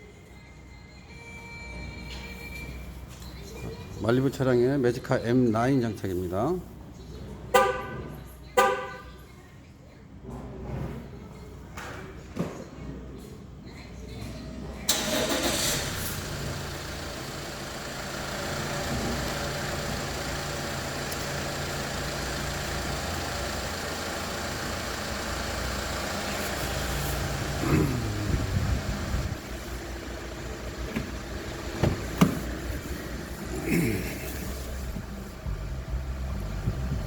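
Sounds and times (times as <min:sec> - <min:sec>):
car engine idling: 0:14.9 - 0:37.0.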